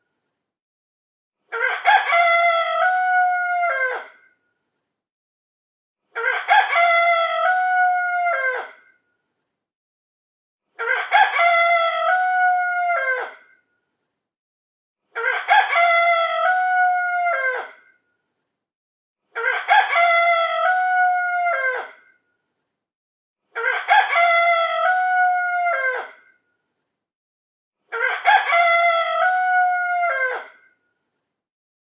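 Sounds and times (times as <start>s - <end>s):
rooster crowing: 28.0s - 30.5s.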